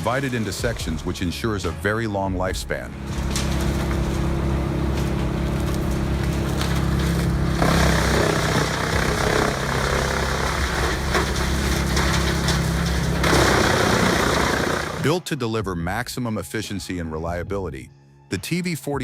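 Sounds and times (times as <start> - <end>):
wood chipper running: 2.9 - 15.1
louder rougher chipping noise: 3.0 - 15.1.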